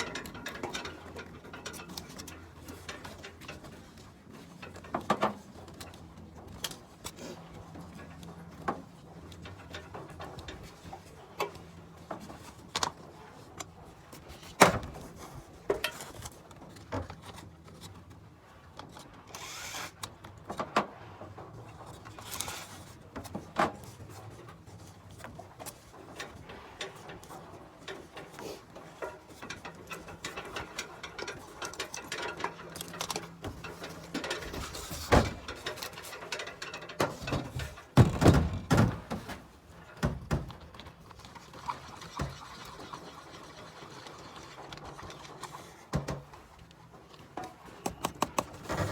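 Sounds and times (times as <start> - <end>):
hand tools clicking and knocking: 47.4 - 48.6.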